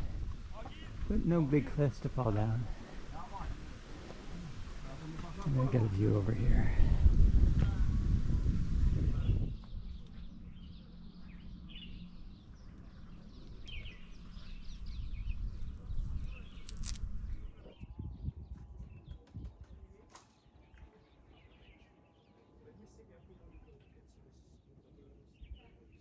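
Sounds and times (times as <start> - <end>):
small birds chirping: 0.0 - 7.8, 8.5 - 26.0
low rumbling background: 0.0 - 18.3.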